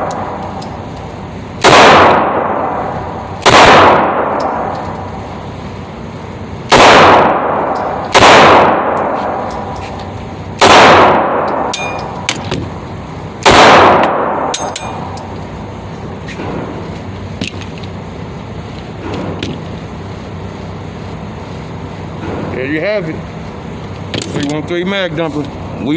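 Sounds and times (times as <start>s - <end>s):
pistol shots echoing: 1.6s - 5.0s, 6.7s - 9.8s, 10.6s - 12.2s, 13.4s - 15.1s.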